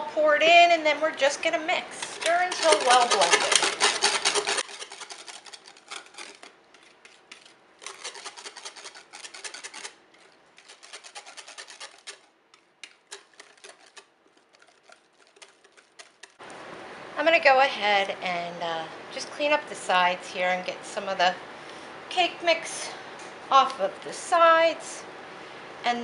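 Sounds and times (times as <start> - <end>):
utensil scraping plastic pan: 1.8 - 16.4.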